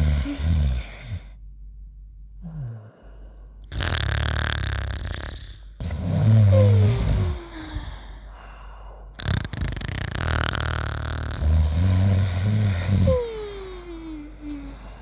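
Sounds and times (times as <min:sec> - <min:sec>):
cartoon snoring: 0:00.0 - 0:01.4, 0:03.7 - 0:07.8, 0:09.2 - 0:14.7.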